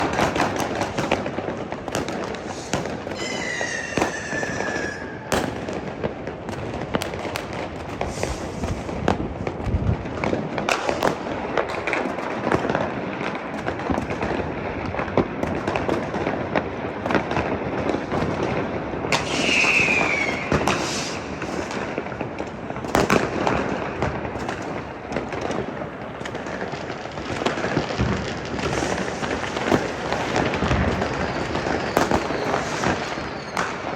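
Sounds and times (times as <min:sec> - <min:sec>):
fireworks and firecrackers bangs: 0:00.0 - 0:33.9
whistling rocket falling in pitch: 0:02.4 - 0:05.7, 0:19.1 - 0:21.8, 0:28.7 - 0:33.9.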